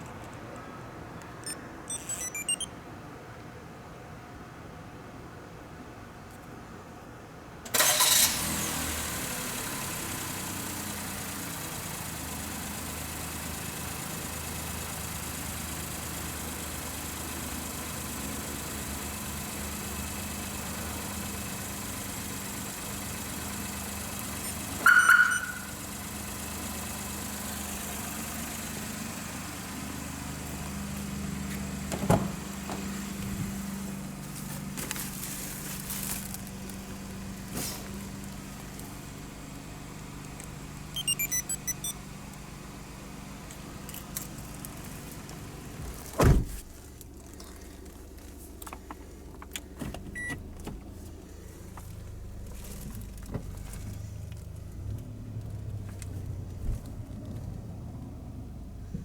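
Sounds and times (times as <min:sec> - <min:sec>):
car engine starting and idling: 0:07.6 - 0:59.0
short loud beep: 0:24.9 - 0:25.7, 0:41.0 - 0:42.0.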